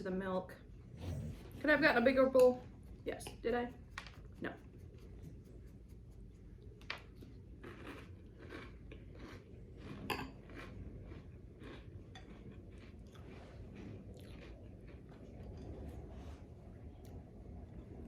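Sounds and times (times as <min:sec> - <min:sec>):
person chewing crunchy cereal: 0:07.2 - 0:15.7.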